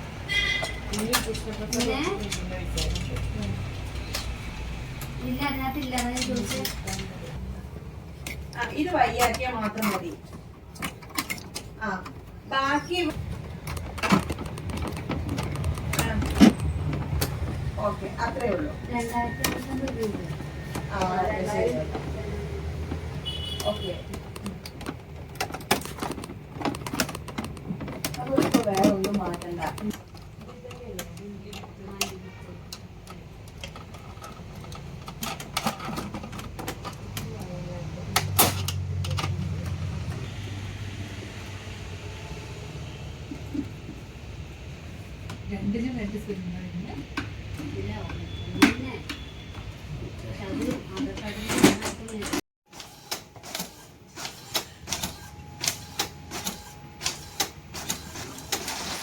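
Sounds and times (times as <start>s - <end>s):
printer mechanism clicking: 13.3s - 21.2s, 22.9s - 40.2s, 51.0s - 59.0s
printer low hum: 52.7s - 59.0s.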